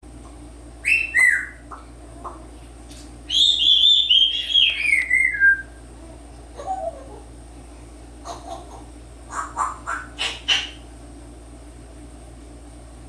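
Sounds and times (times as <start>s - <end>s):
parrot whistling: 0.8s - 1.6s, 3.3s - 5.8s.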